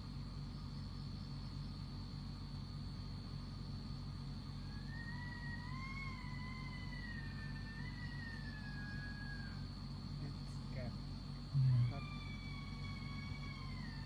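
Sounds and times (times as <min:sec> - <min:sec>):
low hum: 0:00.0 - 0:14.0
high whine: 0:11.5 - 0:14.0
faint high-pitched wail: 0:11.6 - 0:14.0.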